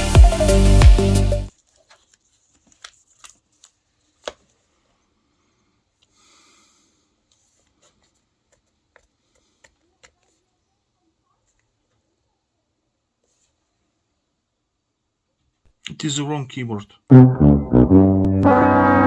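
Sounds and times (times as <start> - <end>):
laptop parts clicking and tapping: 1.8 - 4.5, 8.5 - 10.4.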